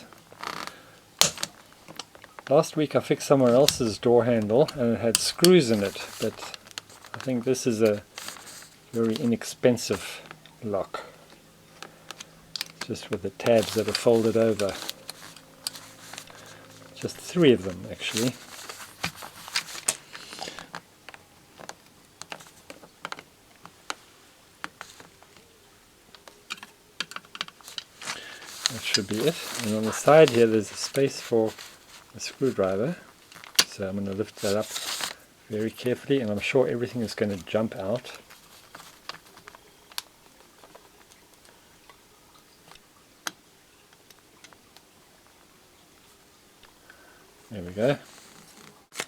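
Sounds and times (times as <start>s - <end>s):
small metal clicks and taps: 11.3s - 13.2s.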